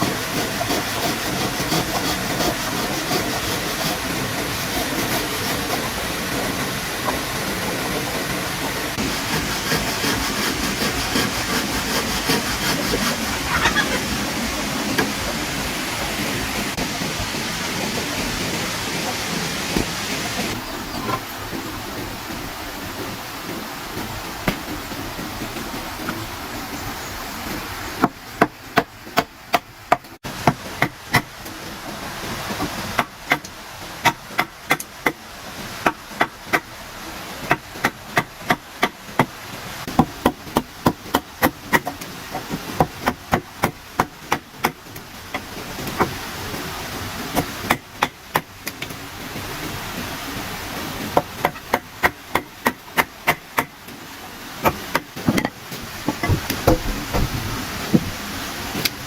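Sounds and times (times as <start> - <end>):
hammer striking wood: 28.0 - 31.3, 51.2 - 53.7, 54.6 - 57.3.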